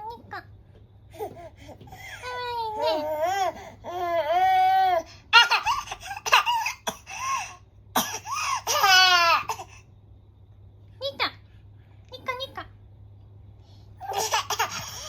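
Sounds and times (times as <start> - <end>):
baby laughing: 5.3 - 7.5, 8.3 - 9.6, 14.0 - 15.0.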